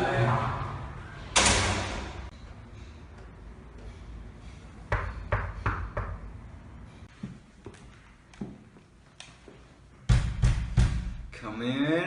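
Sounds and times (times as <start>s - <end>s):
hard knocks on a door: 10.1s - 11.2s.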